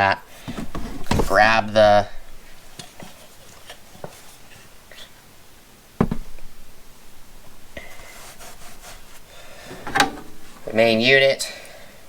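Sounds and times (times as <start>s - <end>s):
faint handling noise: 0.3s - 11.8s
solid thump: 6.0s - 6.6s.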